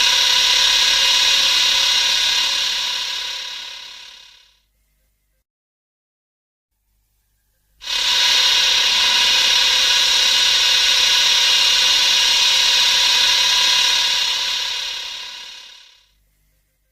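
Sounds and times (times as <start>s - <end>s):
loud steady hissing: 0.0s - 4.5s, 7.8s - 16.0s.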